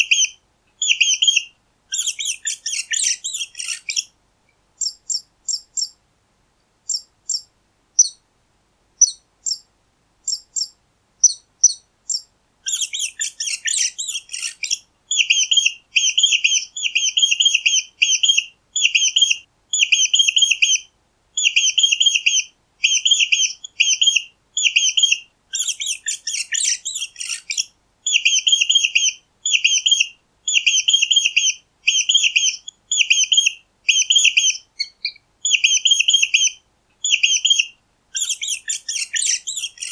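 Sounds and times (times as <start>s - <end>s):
mice squeaking: 0.1s - 4.1s, 10.3s - 19.4s, 21.4s - 39.9s.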